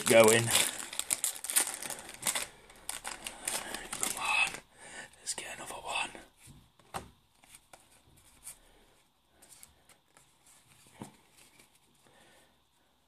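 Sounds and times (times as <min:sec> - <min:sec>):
foil wrapper crinkling: 0:00.0 - 0:04.6.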